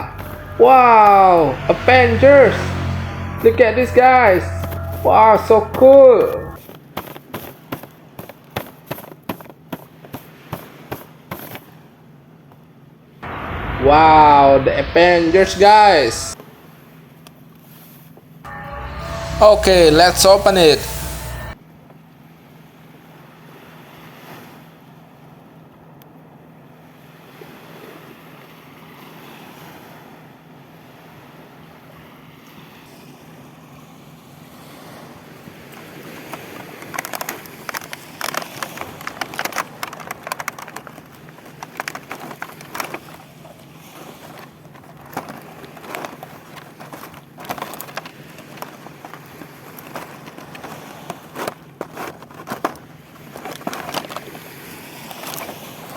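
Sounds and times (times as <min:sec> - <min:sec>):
low hum: 0:00.0 - 0:06.6, 0:13.2 - 0:16.4, 0:18.5 - 0:21.6
surf: 0:00.0 - 0:06.6.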